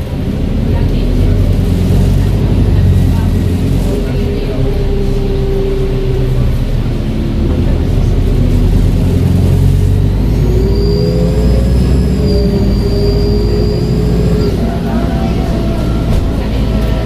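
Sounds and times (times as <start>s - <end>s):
bus engine hum: 0.0s - 17.0s
high turbo whistle: 9.6s - 16.1s.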